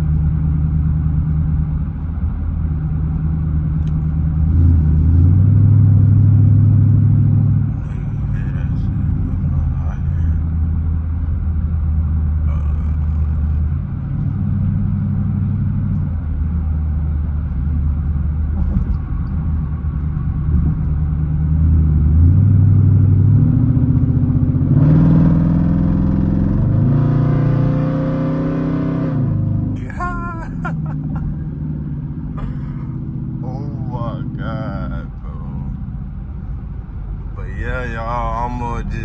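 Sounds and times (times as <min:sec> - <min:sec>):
engine accelerating through gears: 0:03.8 - 0:10.3, 0:17.2 - 0:35.8.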